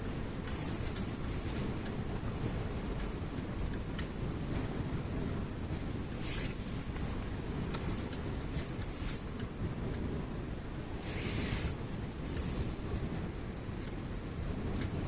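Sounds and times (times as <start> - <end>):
light ticks: 0.0 - 2.1, 2.8 - 4.7, 6.1 - 10.1, 11.7 - 14.1, 14.7 - 15.0
rustling hiss: 0.0 - 4.0, 5.2 - 14.1
wind buffeting microphone: 0.0 - 15.0.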